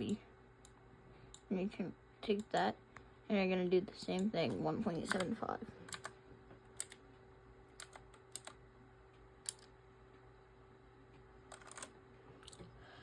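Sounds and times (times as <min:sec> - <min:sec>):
faint steady hum: 0:00.0 - 0:13.0
computer keyboard keys clicking: 0:05.0 - 0:06.2, 0:06.8 - 0:07.0, 0:07.8 - 0:08.6, 0:09.4 - 0:09.7, 0:11.5 - 0:12.6.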